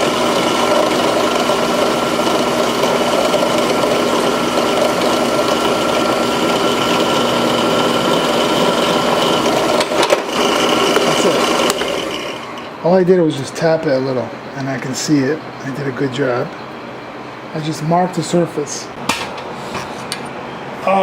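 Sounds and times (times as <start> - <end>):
electric drill motor running: 0.0 - 12.7.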